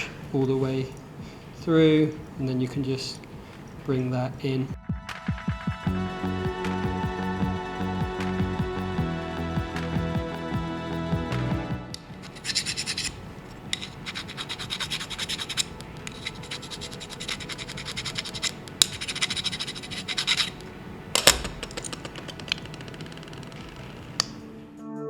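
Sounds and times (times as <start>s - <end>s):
screw scraping in metal: 12.2s - 24.4s.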